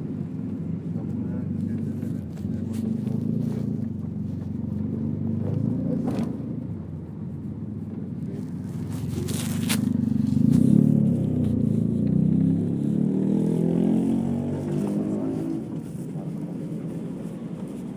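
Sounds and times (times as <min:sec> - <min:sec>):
car engine running: 0:00.0 - 0:13.0, 0:13.6 - 0:17.9
scraping rustling noises: 0:01.6 - 0:12.0.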